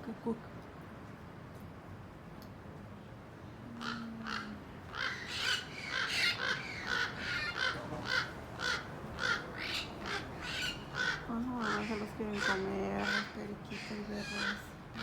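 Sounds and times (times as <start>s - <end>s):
crows cawing: 3.8s - 15.0s.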